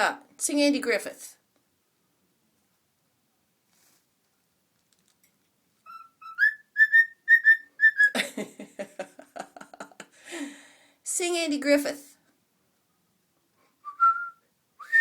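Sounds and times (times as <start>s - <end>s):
cockatiel whistling: 5.8s - 8.2s.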